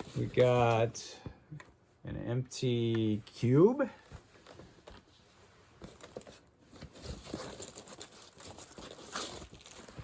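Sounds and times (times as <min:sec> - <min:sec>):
paper envelopes crinkling: 0:05.9 - 0:10.0.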